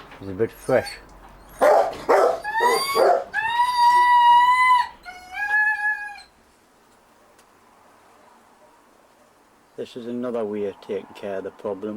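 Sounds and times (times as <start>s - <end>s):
dog yelping: 0.7s - 6.3s
dog howling whines: 2.2s - 6.3s.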